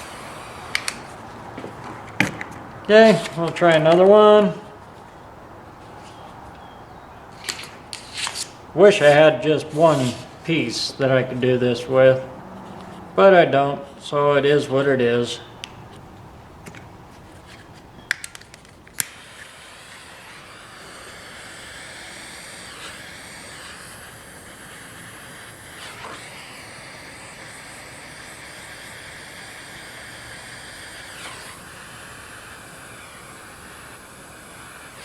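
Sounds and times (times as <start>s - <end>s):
sharp clicks: 0.0s - 4.3s, 7.3s - 8.6s, 15.6s - 20.5s
torch flame hissing: 0.0s - 35.0s.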